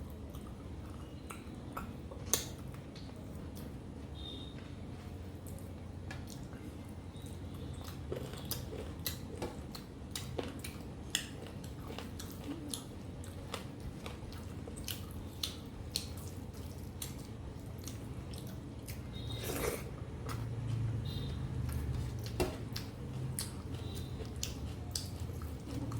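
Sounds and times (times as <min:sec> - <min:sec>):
wet chewing and mouth smacks: 0:07.5 - 0:20.9, 0:21.6 - 0:25.9.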